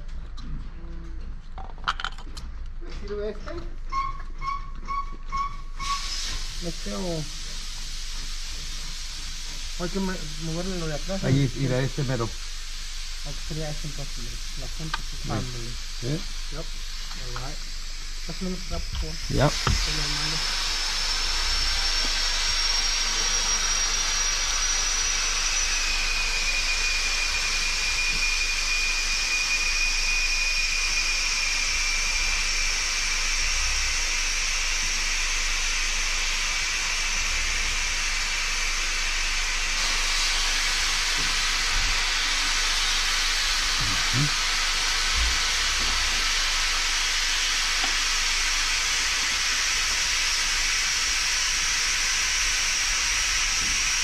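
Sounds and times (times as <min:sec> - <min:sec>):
faint high whistling tones: 0:03.9 - 0:06.7, 0:25.2 - 0:32.6
steady hiss: 0:05.8 - 0:54.0.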